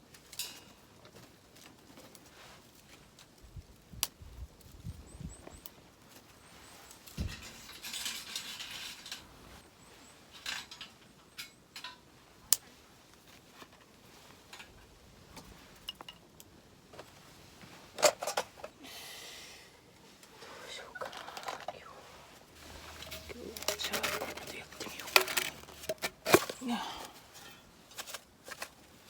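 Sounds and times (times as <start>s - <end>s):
rustling noise: 20.0s - 29.0s
utensils and gear clinking: 22.6s - 28.8s.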